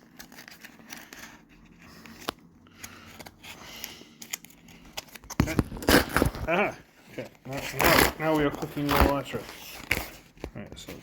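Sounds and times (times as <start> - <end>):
package being opened by hand: 0.0 - 6.6.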